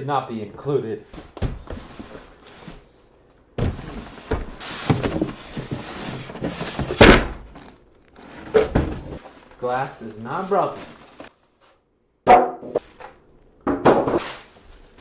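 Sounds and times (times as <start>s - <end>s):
cardboard rustling and scraping: 3.6s - 11.8s.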